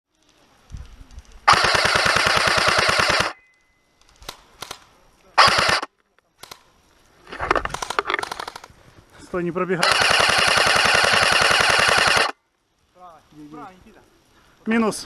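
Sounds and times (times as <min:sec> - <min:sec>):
airsoft gun firing: 0:01.4 - 0:03.4, 0:05.4 - 0:06.6, 0:07.6 - 0:08.7, 0:09.8 - 0:12.4.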